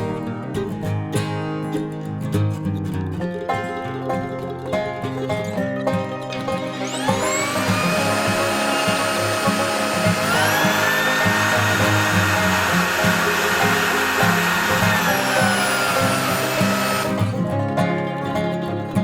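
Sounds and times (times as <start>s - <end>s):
banjo music: 0.0s - 19.0s
vacuum motor whining: 6.6s - 17.4s.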